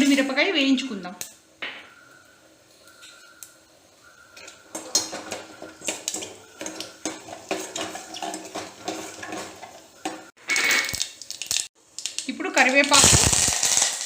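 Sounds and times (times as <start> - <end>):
spices frying in oil: 2.3 - 14.0
metal spoon scraping a pan: 4.4 - 11.0.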